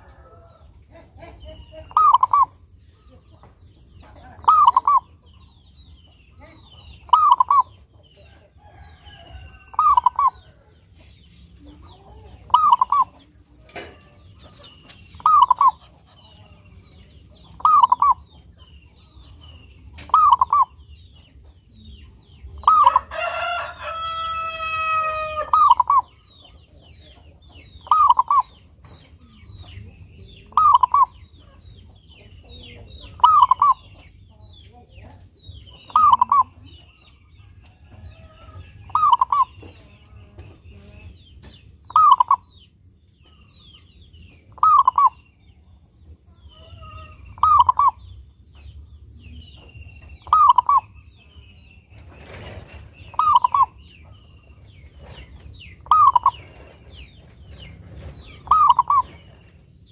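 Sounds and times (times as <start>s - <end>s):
small birds chirping: 0.0s - 59.9s
dove cooing: 1.4s - 2.6s, 4.4s - 5.1s, 7.1s - 7.7s, 12.5s - 13.1s, 15.2s - 15.9s, 17.6s - 18.2s, 20.0s - 20.8s, 24.8s - 26.1s, 27.8s - 28.6s, 30.5s - 31.2s, 33.2s - 33.9s, 35.9s - 36.6s, 38.5s - 39.6s, 41.9s - 42.4s, 44.6s - 45.2s, 47.4s - 48.0s, 50.2s - 50.9s, 53.1s - 53.8s, 55.8s - 56.7s, 58.0s - 59.4s
rooster crowing: 8.6s - 10.4s, 22.6s - 26.0s.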